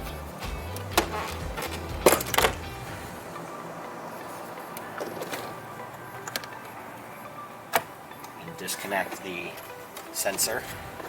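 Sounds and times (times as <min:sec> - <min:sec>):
faint background music: 0:00.0 - 0:11.0.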